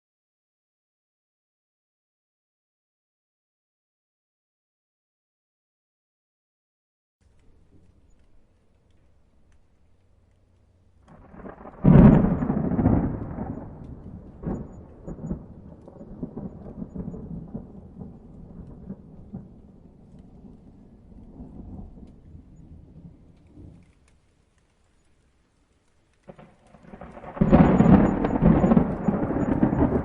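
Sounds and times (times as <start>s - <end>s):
thunder crack and rumble: 11.0s - 24.2s, 26.2s - 30.0s.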